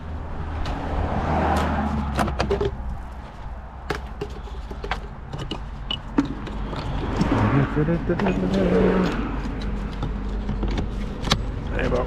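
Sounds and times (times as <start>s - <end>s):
hand tools clicking and knocking: 3.9s - 4.4s.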